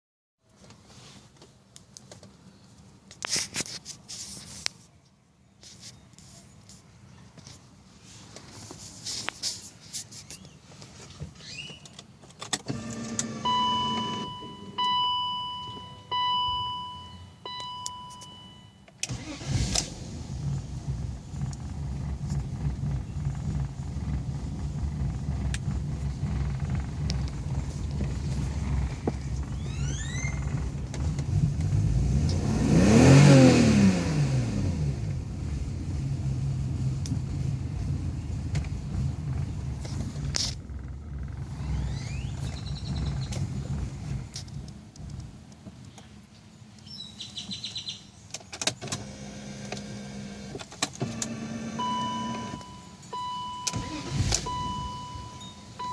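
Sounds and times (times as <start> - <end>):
car engine cranking: 10.3 - 16.5, 17.5 - 46.0, 48.3 - 55.9
car warning chime: 12.8 - 19.4, 51.7 - 55.9.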